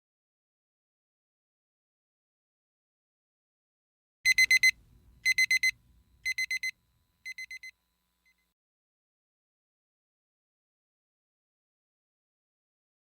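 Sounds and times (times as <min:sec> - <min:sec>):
electronic alarm beeping: 0:04.3 - 0:06.7, 0:07.3 - 0:07.7.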